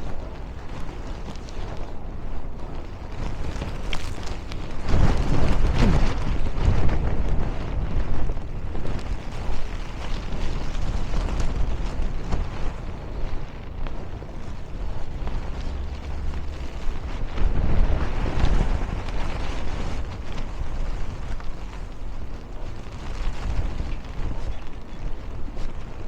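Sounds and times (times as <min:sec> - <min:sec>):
wind buffeting microphone: 0:00.0 - 0:26.0
street traffic: 0:09.1 - 0:20.2.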